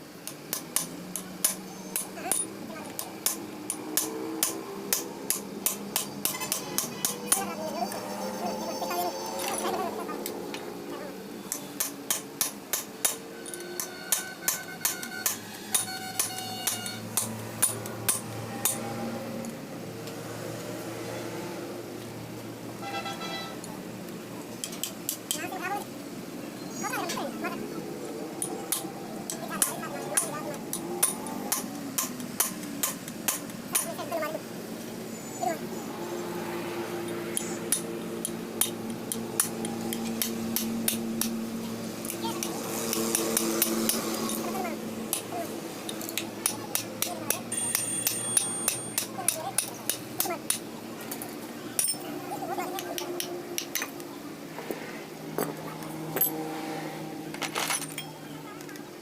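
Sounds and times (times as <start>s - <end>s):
metal parts tapped with a tool: 0.2s - 8.1s, 11.5s - 18.8s, 24.6s - 25.4s, 28.4s - 33.9s, 37.1s - 41.4s, 45.1s - 52.1s, 57.4s - 58.8s.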